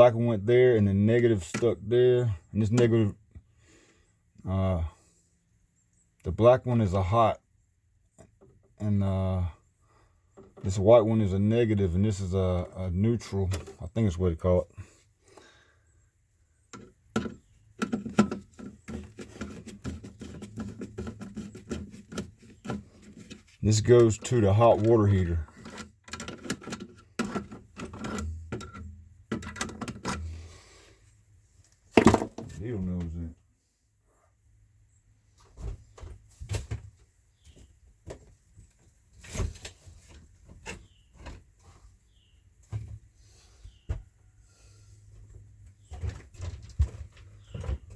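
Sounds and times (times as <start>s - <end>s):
wires and metal parts rattling: 16.8s - 30.5s.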